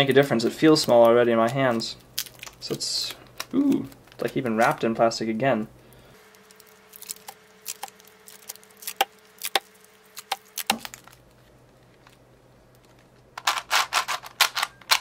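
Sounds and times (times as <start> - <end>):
plastic wrapping crinkling: 0.0 - 5.0, 6.2 - 14.2.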